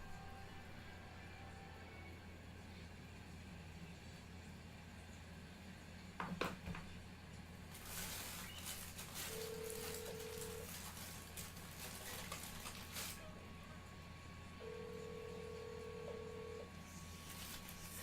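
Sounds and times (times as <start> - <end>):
low electrical hum: 0.0 - 18.0
telephone ringback tone: 9.2 - 10.7, 14.6 - 16.8.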